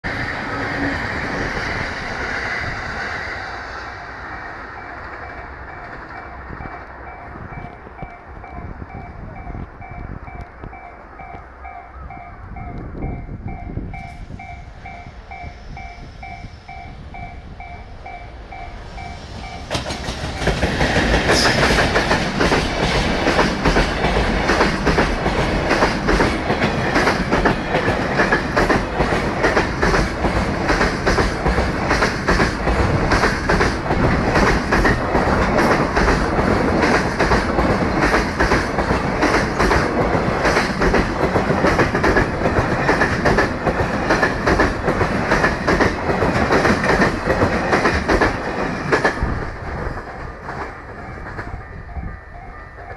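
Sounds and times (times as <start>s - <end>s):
train wheels rumbling on rails: 0.0s - 52.9s
clickety-clack over rail joints: 4.8s - 11.5s, 19.2s - 52.1s.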